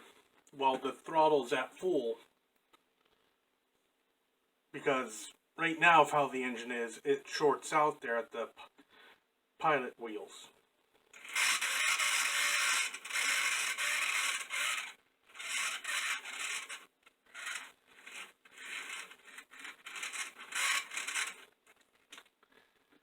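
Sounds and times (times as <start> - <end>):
squeaking gears: 11.2 - 21.5
model train motor whirring: 11.2 - 21.6.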